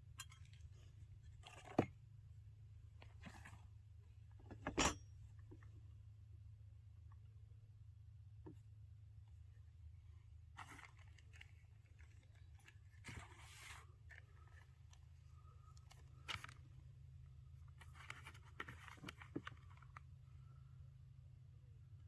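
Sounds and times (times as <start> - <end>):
steady low hum: 0.0 - 22.0
quiet scraping and rustling: 0.1 - 2.0, 2.9 - 5.7, 10.4 - 20.6.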